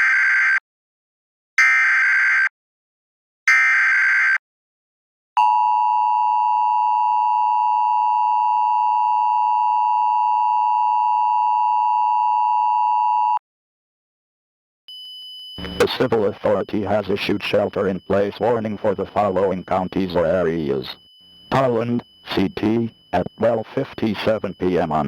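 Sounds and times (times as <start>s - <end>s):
steady dual-tone attention tone: 14.9s - 25.0s
digital data bursts: 15.6s - 25.0s.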